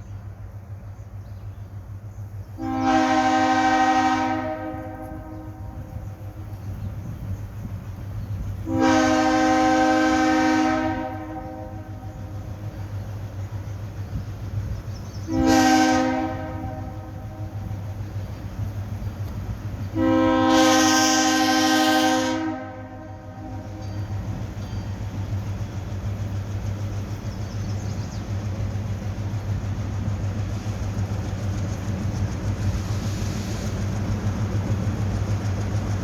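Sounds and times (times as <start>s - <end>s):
low locomotive hum: 0.0s - 36.0s
locomotive air horn blasts: 2.6s - 6.0s, 8.6s - 12.6s, 15.3s - 17.9s, 19.9s - 24.4s.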